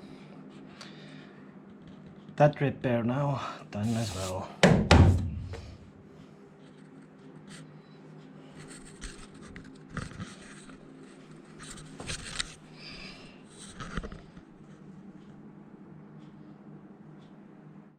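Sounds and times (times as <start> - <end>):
low steady hum: 0.0 - 8.6
faint scraping and scratching: 3.8 - 4.5.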